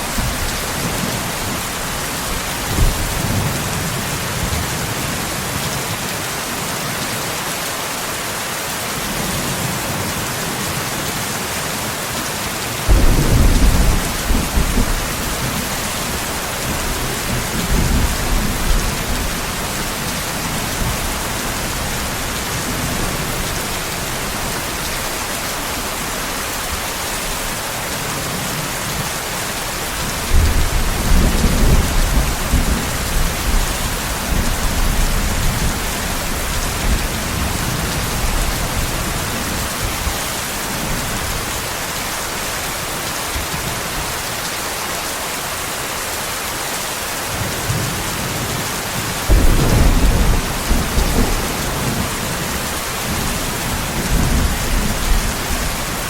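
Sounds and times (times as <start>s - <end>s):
heavy rain hissing: 0.0s - 56.0s
thunder rolling: 2.6s - 3.6s, 12.9s - 19.6s, 49.3s - 55.9s.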